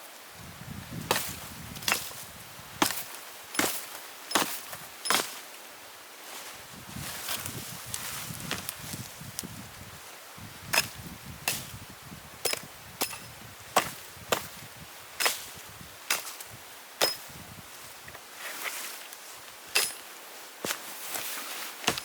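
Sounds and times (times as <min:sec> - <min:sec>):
blade chopping wood: 0:01.1 - 0:02.2, 0:02.8 - 0:05.4, 0:10.7 - 0:11.8, 0:12.4 - 0:14.5, 0:15.2 - 0:15.5, 0:16.1 - 0:16.4, 0:17.0 - 0:17.2, 0:19.7 - 0:20.0.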